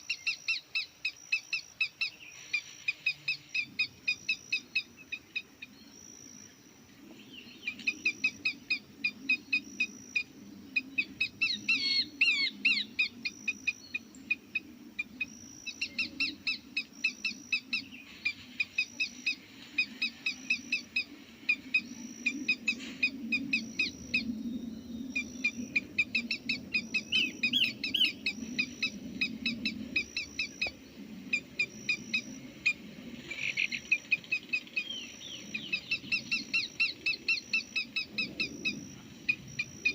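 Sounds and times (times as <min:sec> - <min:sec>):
small birds chirping: 0:00.0 - 0:32.4, 0:33.3 - 0:39.9.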